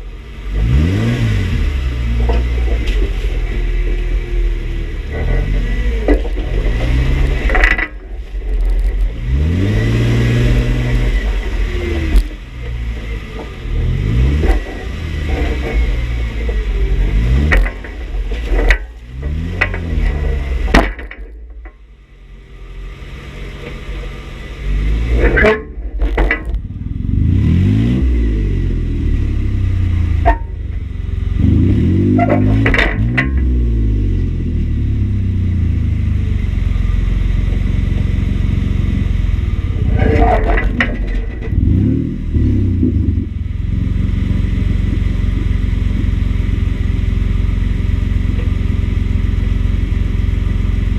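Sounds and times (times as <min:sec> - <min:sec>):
engine revving under load: 0:00.0 - 0:08.0, 0:08.6 - 0:20.8, 0:22.6 - 0:50.9
sharp knocks and clunks: 0:32.2 - 0:33.6.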